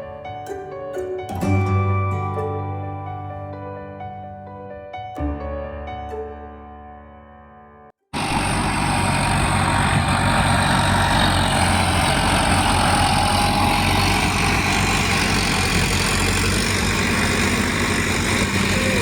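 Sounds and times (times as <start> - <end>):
motor engine idling: 8.2 - 19.0.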